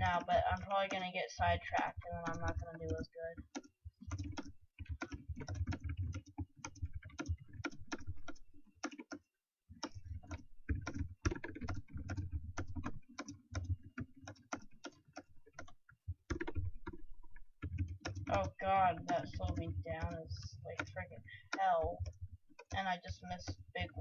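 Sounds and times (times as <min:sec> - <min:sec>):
fast typing on keyboard: 0:00.0 - 0:09.2, 0:09.8 - 0:24.0.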